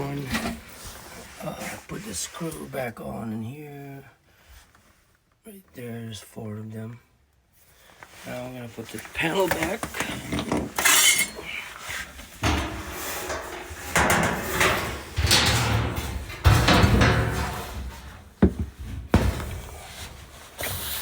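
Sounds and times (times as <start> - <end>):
panel scraping and clattering: 9.4 - 21.0.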